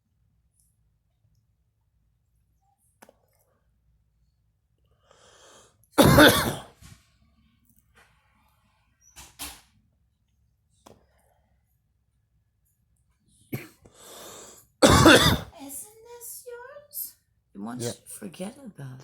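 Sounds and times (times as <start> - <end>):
person coughing: 6.0 - 6.7, 13.5 - 13.8, 14.8 - 15.5
person breathing in: 13.9 - 14.6.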